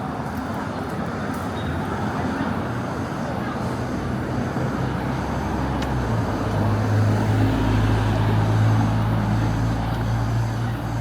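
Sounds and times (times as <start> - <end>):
vehicle engine hum: 3.3 - 11.0.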